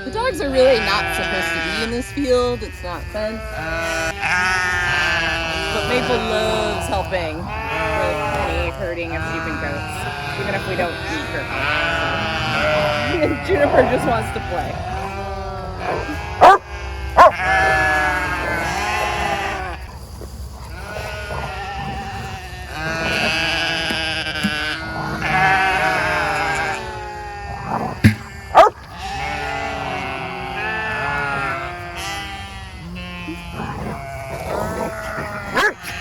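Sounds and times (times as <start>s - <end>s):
sheep bleating: 0.0s - 19.9s, 20.7s - 36.0s
sharp knocks: 28.0s - 28.4s.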